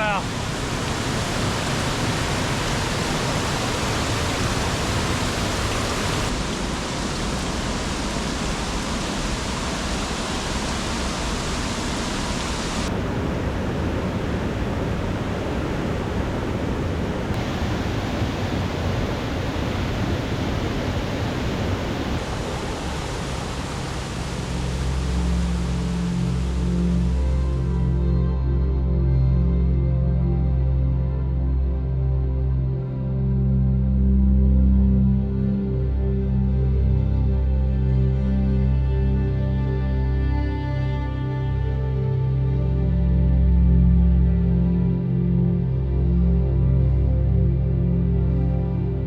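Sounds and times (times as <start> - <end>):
roaring mountain stream: 0.0 - 49.0
music: 24.1 - 49.0.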